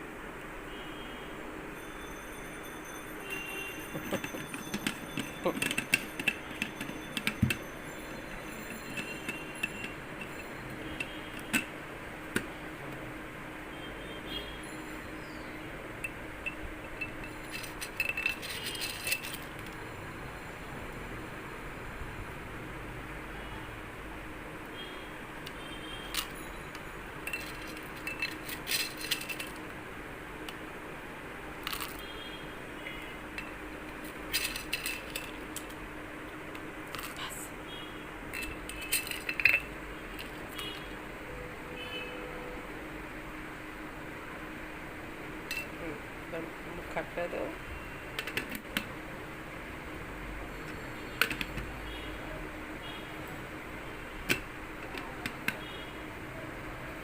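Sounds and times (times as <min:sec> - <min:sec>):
utensil clinking against glass: 0:03.2 - 0:11.7, 0:16.0 - 0:19.6, 0:26.1 - 0:29.6, 0:33.4 - 0:35.7, 0:38.3 - 0:40.8, 0:45.5 - 0:45.8.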